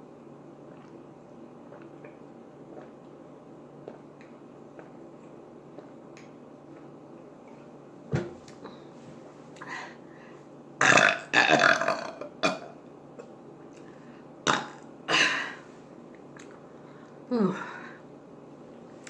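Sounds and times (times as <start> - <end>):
person burping loudly: 10.8 - 12.8, 14.5 - 15.6.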